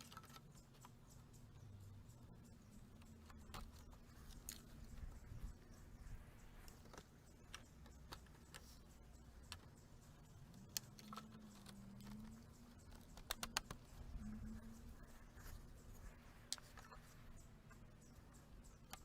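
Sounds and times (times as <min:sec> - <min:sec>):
plastic brackets clicking together: 0:09.4 - 0:14.0.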